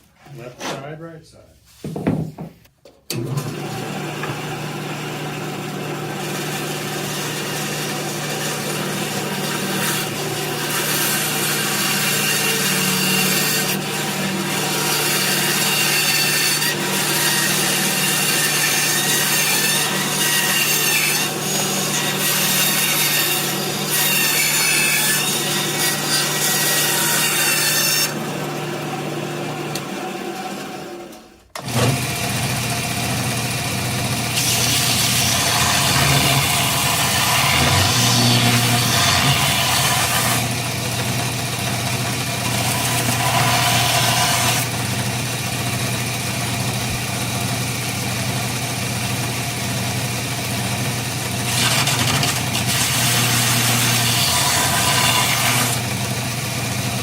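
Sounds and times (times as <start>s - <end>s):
power tool motor hum: 29.7s - 45.2s.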